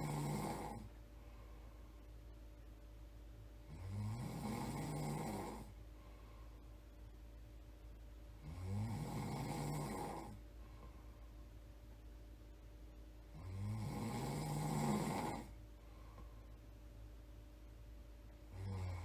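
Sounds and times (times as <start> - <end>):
person snoring: 0.0 - 0.9, 3.7 - 5.8, 8.4 - 10.4, 13.3 - 15.6, 18.5 - 19.0.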